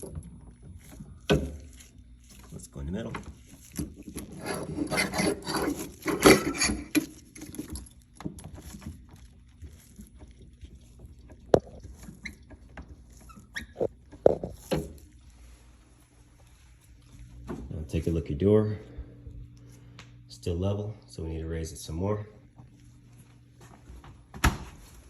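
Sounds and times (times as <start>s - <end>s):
lifting jack creaking and squeaking: 3.8s - 15.0s.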